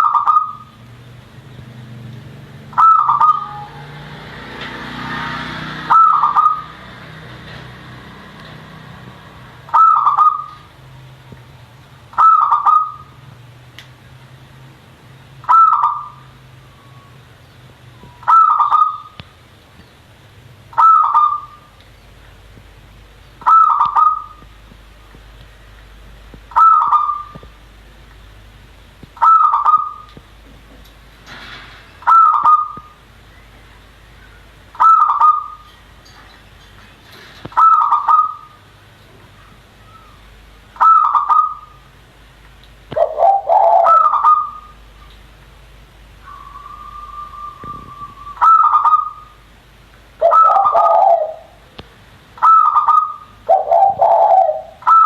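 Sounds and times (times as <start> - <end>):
peafowl honking calls: 0.0 - 0.8, 2.7 - 4.1, 4.9 - 6.8, 9.6 - 10.7, 12.1 - 13.2, 15.4 - 17.2, 17.9 - 19.2, 20.7 - 21.8, 23.4 - 24.5, 26.5 - 27.4, 29.2 - 30.2, 32.0 - 33.0, 34.2 - 35.8, 37.4 - 38.6, 39.4 - 41.9, 42.9 - 45.1, 46.2 - 49.4, 50.2 - 51.6, 52.4 - 55.0.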